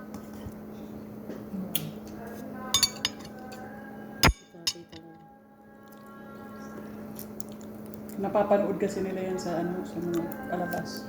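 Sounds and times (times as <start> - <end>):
steady low hum: 2.5 - 5.2
cutlery and dishes clinking: 2.8 - 5.1.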